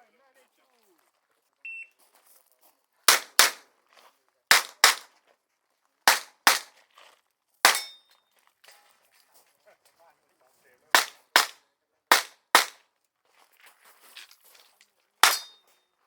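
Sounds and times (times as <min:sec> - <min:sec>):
revolver gunshots: 0:03.1 - 0:03.6, 0:04.5 - 0:05.1, 0:06.1 - 0:06.7, 0:07.7 - 0:07.9, 0:11.0 - 0:12.8, 0:15.2 - 0:15.5.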